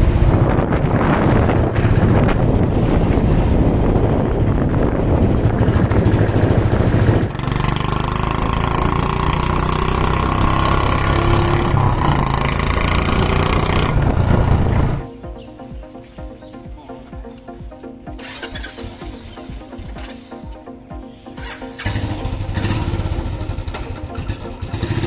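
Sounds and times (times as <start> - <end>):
loud motorcycle engine exhaust: 0.0 - 15.1, 21.4 - 25.0.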